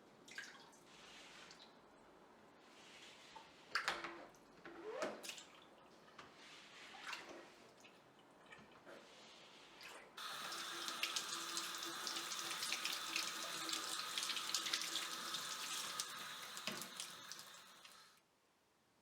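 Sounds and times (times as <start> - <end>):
tap running into a sink: 10.2 - 18.1.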